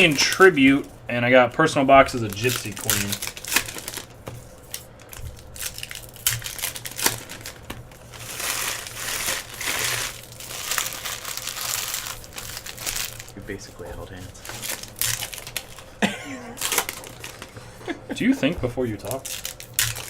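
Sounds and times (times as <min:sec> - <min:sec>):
plastic wrapping crinkling: 0:00.0 - 0:00.9, 0:02.0 - 0:16.0, 0:16.6 - 0:17.6, 0:19.0 - 0:20.0.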